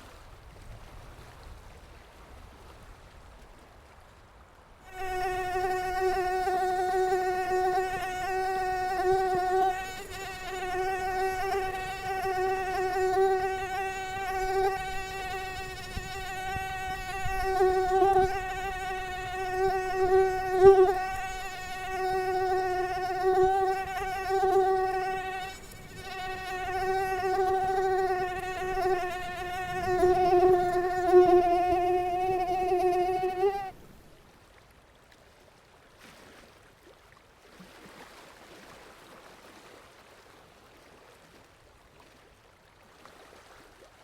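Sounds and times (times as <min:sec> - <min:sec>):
mosquito whining: 0:04.9 - 0:33.8.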